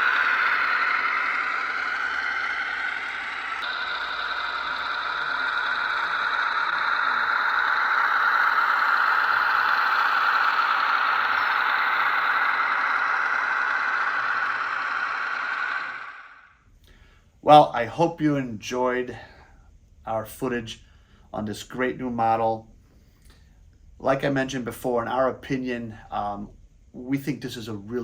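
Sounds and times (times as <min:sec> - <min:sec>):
model train rattling and whirring: 0:00.0 - 0:16.5.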